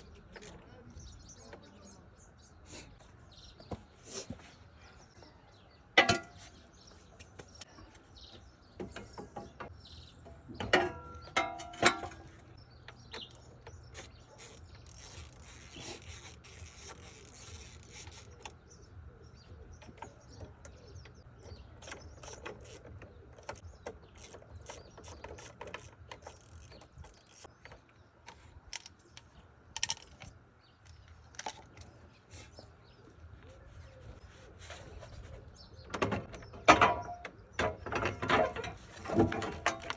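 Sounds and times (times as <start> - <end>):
metal clanks: 8.8 - 13.2, 35.8 - 39.9
tools clicking and knocking: 8.8 - 15.3, 19.8 - 32.0, 35.9 - 39.9.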